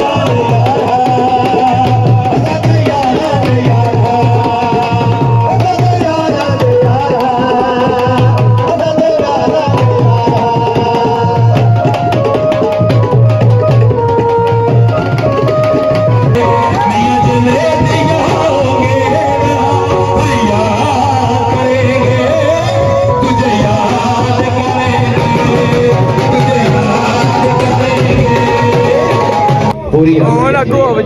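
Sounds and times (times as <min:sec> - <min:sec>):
music with steady drum beat: 0:00.0 - 0:31.0
gliding melody line: 0:12.6 - 0:31.0.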